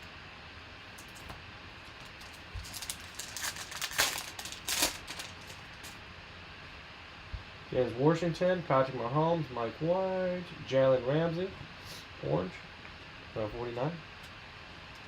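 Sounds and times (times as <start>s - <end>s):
foil wrapper crinkling and tearing: 1.0s - 6.0s.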